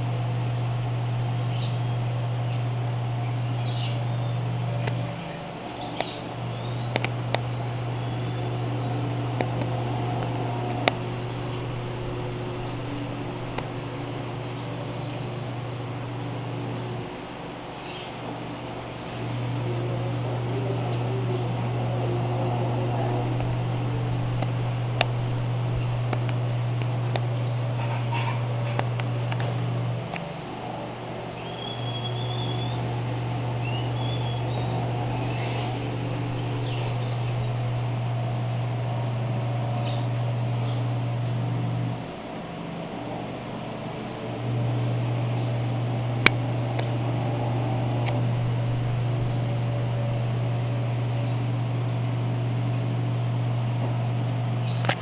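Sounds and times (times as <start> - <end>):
aquarium pump humming: 0.0 - 55.0.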